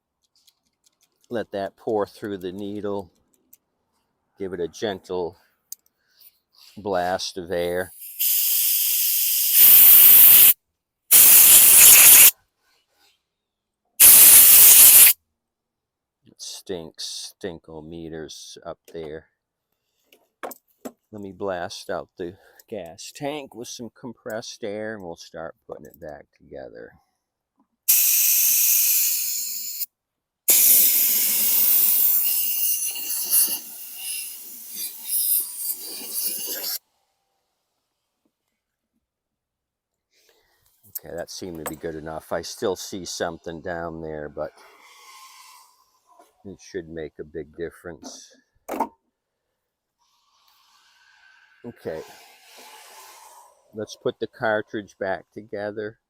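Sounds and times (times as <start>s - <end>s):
compressed air blasts: 8.0s - 12.3s, 14.0s - 15.2s, 27.9s - 29.9s, 30.5s - 36.8s.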